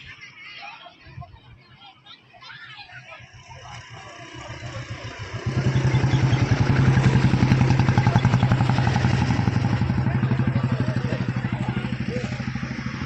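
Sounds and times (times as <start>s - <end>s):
motorcycle engine passing by: 3.7s - 13.0s.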